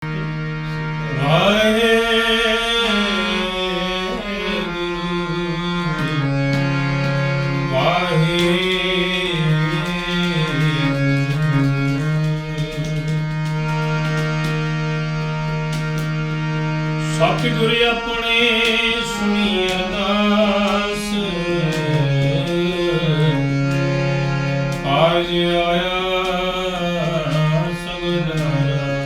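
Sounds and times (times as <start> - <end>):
steady held drone: 0.0 - 29.0
devotional melodic singing: 0.1 - 29.0
light tabla strokes: 5.8 - 29.0.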